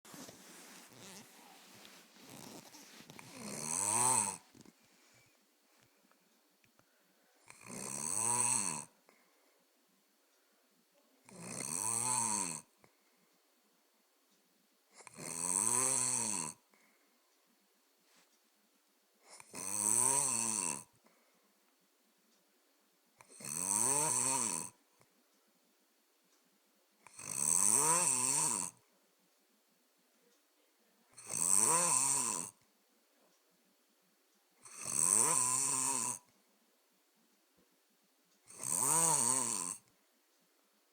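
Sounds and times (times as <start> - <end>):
quiet breathing: 0.1 - 7.8, 8.7 - 11.4, 12.6 - 14.2, 16.6 - 18.4, 20.8 - 21.8
rasping snoring: 0.9 - 1.5, 2.2 - 4.7, 7.4 - 9.0, 11.3 - 12.7, 15.0 - 16.6, 19.3 - 20.9, 23.2 - 24.8, 27.1 - 28.8, 31.2 - 32.6, 34.6 - 36.3, 38.5 - 39.9.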